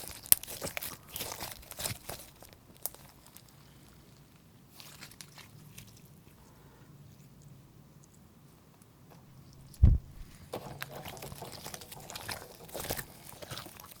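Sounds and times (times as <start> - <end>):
low thump: 9.8 - 10.4.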